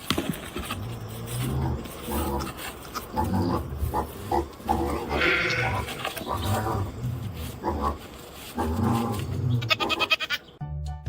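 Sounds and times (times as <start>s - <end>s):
short low animal calls: 5.0s - 6.5s.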